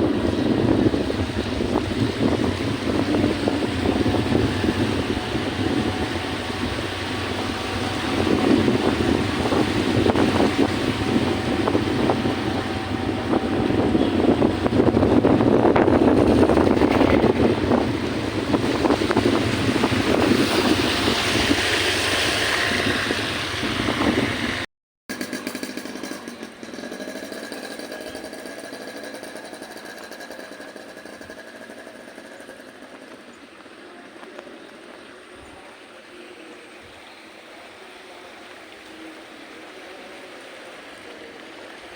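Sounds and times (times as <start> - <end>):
wind buffeting microphone: 0.0 - 24.6
vehicle engine running: 0.0 - 41.9.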